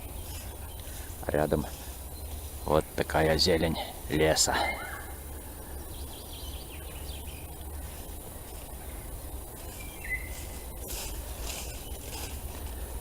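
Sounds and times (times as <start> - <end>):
soft even hiss: 0.0 - 13.0
faint bird chirps: 3.7 - 12.3.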